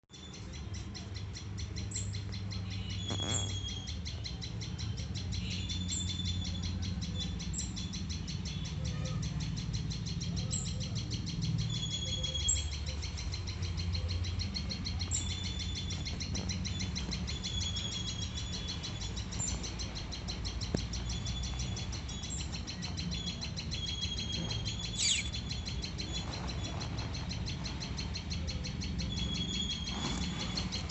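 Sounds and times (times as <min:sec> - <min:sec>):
baby birds peeping: 0:00.2 - 0:30.9.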